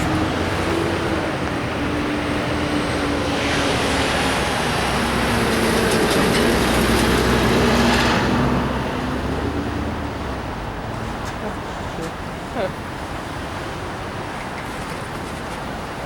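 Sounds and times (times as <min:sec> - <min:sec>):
loud rushing noise: 0:00.0 - 0:12.4
train wheels on rails: 0:00.0 - 0:16.0.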